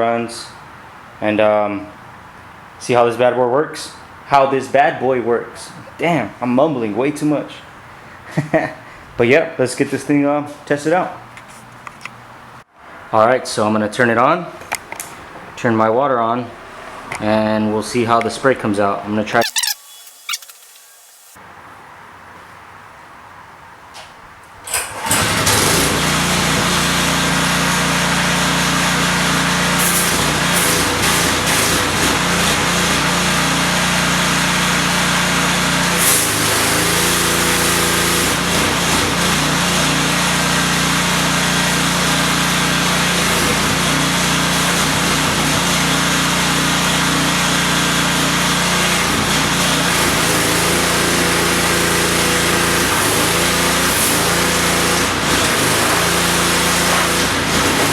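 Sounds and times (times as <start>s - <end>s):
pressure washer engine running: 25.0s - 57.9s.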